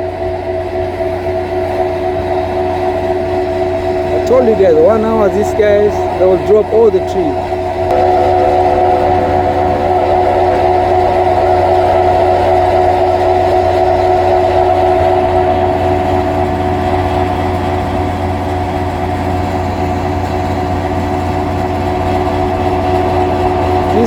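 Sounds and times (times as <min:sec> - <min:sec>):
large engine idling: 0:04.2 - 0:18.9.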